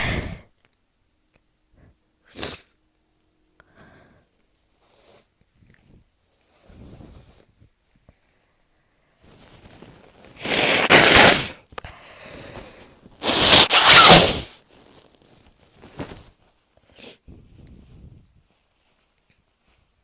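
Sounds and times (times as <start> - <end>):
person sneezing: 0.0 - 0.4, 10.4 - 11.5, 13.2 - 14.5
quiet breathing: 0.0 - 0.4, 3.6 - 5.3, 11.8 - 13.0.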